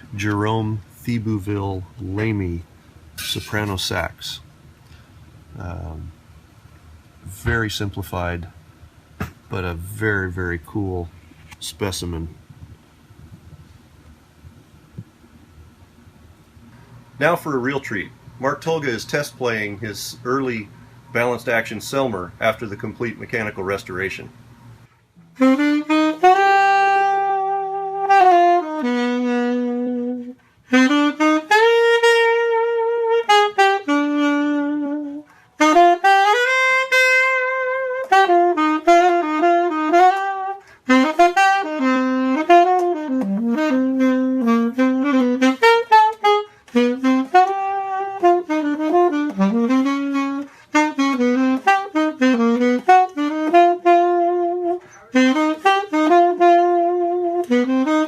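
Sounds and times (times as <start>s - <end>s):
alto saxophone solo: 25.2s - 58.0s.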